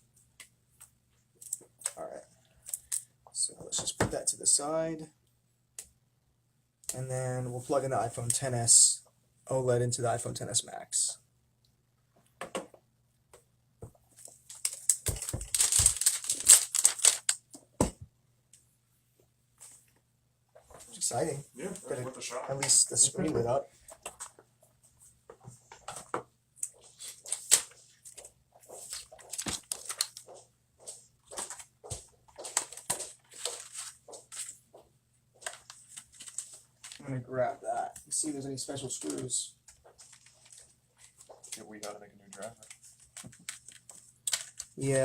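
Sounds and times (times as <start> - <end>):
crinkling: 13.9 - 17.7, 26.6 - 45.0.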